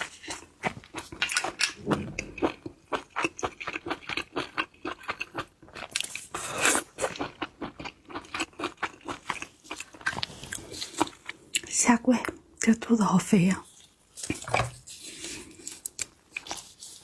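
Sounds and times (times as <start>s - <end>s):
chewing and crunching seafood: 0.0s - 12.7s, 13.7s - 17.0s.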